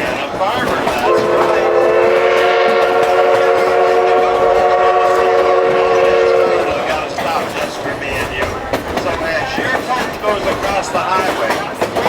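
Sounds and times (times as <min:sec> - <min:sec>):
moving train rumble: 0:00.0 - 0:12.0
locomotive whistle chord: 0:01.0 - 0:07.2.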